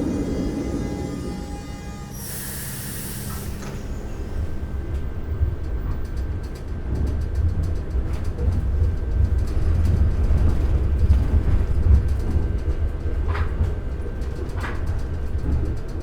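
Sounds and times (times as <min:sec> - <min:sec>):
train rumbling on rails: 0:00.0 - 0:16.0
air brake hiss: 0:02.1 - 0:04.9.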